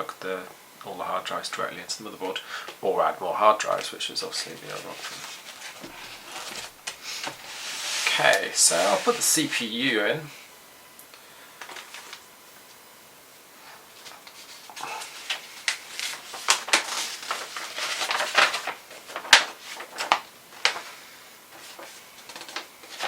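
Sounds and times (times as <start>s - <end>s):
packaging rustling: 3.7s - 9.6s, 11.6s - 12.3s, 13.9s - 23.0s.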